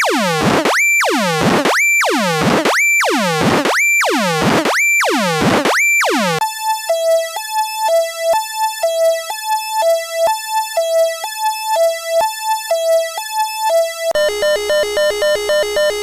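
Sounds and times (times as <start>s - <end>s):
dense layered alarm tone: 0.0s - 6.4s, 14.2s - 16.0s.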